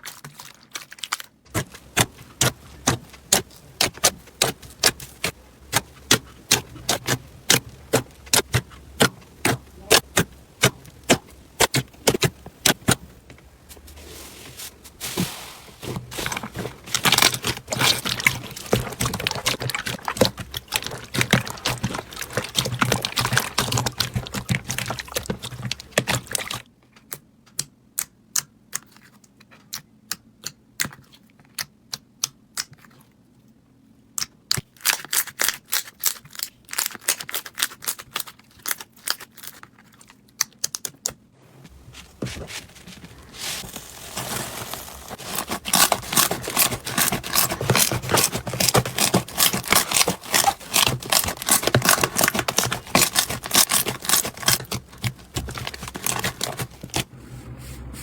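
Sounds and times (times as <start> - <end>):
slime crackling and popping: 16.2 - 26.6, 43.4 - 57.0.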